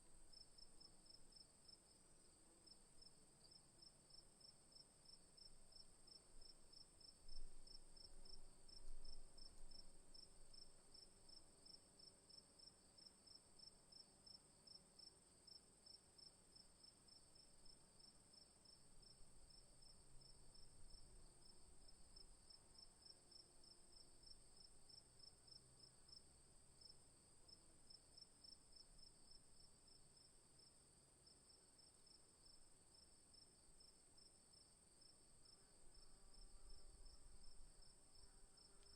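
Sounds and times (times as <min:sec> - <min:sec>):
crickets chirping: 0:16.8 - 0:38.9.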